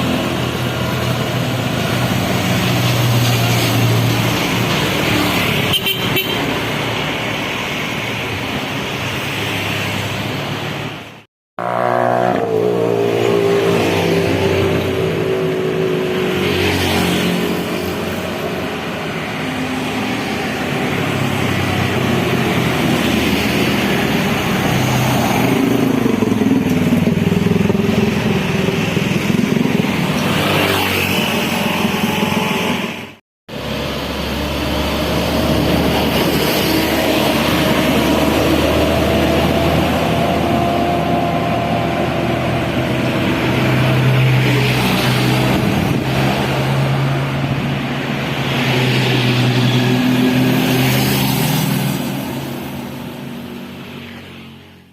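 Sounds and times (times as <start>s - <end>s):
bus engines passing: 0.0s - 54.9s
bus horn melody: 5.7s - 6.5s.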